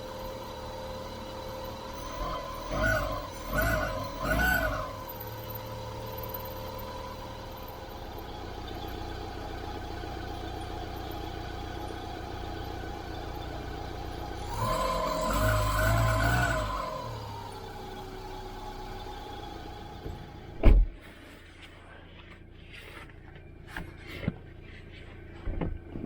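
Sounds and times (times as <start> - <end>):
engine idling: 0.0 - 26.0
drive belt pulley whistle: 1.5 - 6.8, 12.6 - 18.1.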